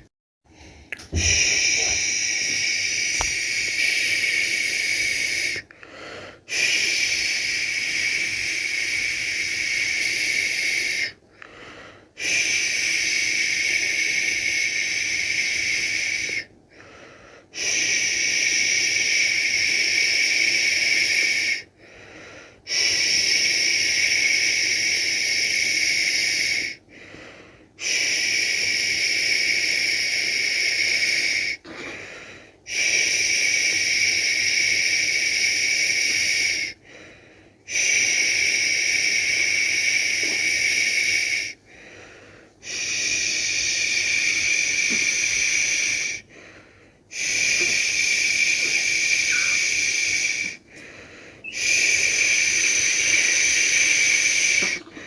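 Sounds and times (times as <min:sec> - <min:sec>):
person shushing: 0:01.0 - 0:04.4, 0:47.2 - 0:50.5, 0:51.4 - 0:54.8.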